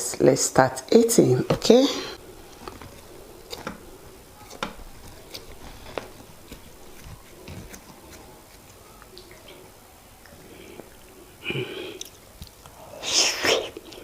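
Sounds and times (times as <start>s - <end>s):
wet eating clicks and smacks: 2.4s - 11.2s, 11.9s - 12.8s.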